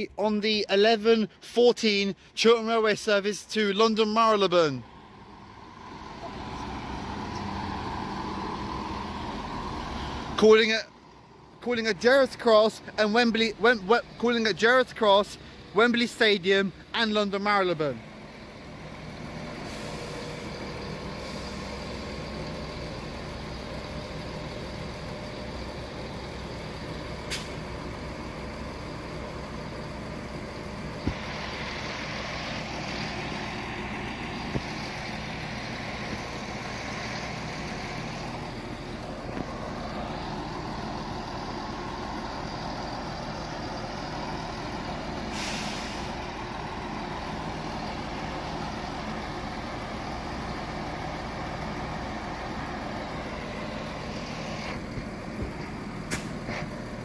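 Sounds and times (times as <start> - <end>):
train engine idling: 0.0 - 57.0
air clicks and hisses: 54.0 - 56.8.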